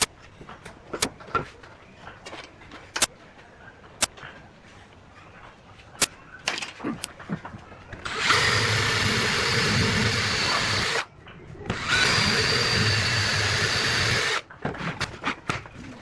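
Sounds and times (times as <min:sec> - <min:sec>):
power tool motor whining: 0:08.0 - 0:11.0, 0:11.7 - 0:14.4.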